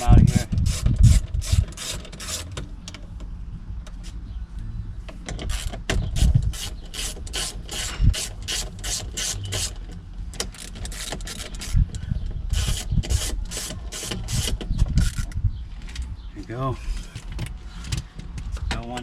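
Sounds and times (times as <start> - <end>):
ratchet clicking rapidly: 0.3 - 2.6, 5.5 - 9.8.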